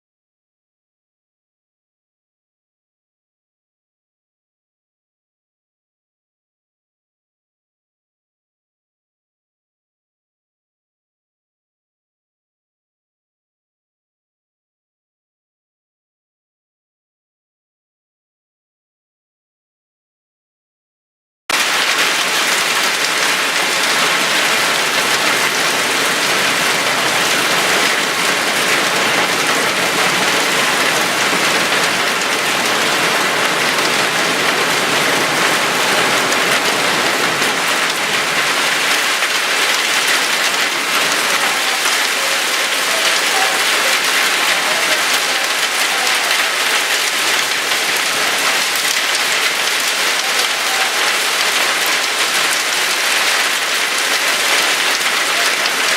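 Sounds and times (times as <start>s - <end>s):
heavy rain and hail pelting: 21.5s - 55.9s.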